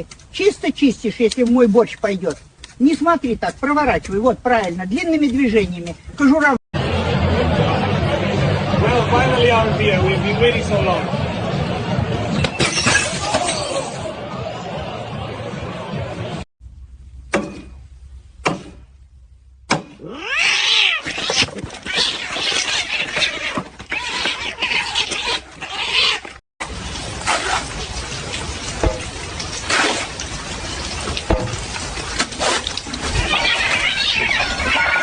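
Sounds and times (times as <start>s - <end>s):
sharp knocks: 18.4s - 18.9s, 19.7s - 20.0s, 28.8s - 29.2s, 31.3s - 31.8s
cats meowing and yowling: 20.0s - 26.4s, 33.0s - 35.0s.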